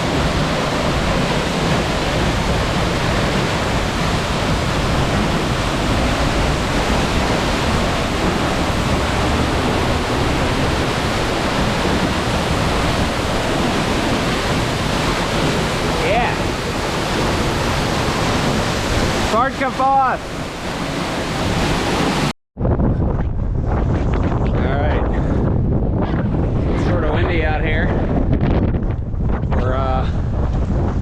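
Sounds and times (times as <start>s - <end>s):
waterfall rushing: 0.0s - 22.3s.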